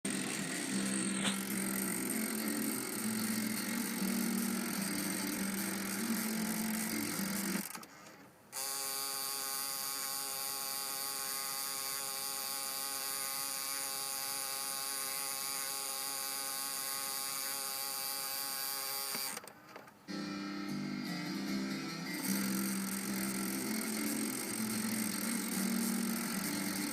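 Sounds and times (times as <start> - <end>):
cassette mechanism grinding buzz: 0.1 - 7.9, 21.8 - 26.9
rough mechanical sound: 0.1 - 7.9.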